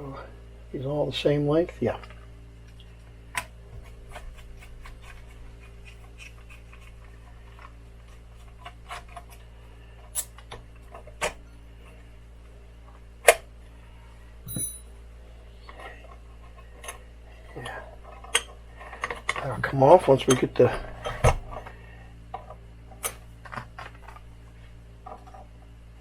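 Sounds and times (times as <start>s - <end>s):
steady low hum: 0.0s - 26.0s
metallic clink: 14.5s - 15.0s.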